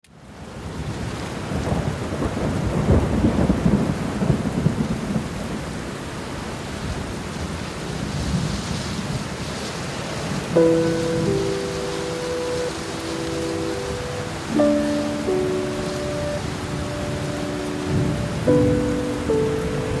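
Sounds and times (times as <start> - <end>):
rain hiss: 0.1 - 20.0
rolling thunder: 0.8 - 5.8, 10.3 - 20.0.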